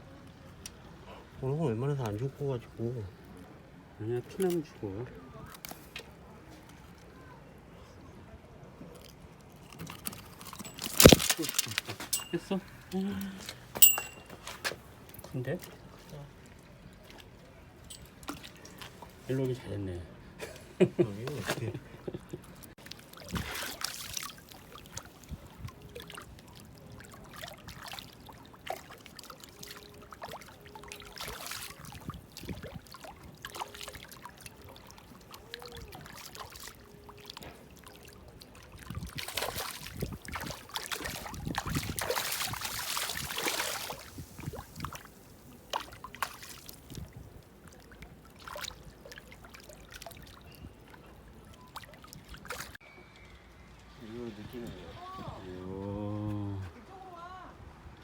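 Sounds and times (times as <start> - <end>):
seawater trickling and splashing: 8.7 - 20.0, 21.0 - 52.8.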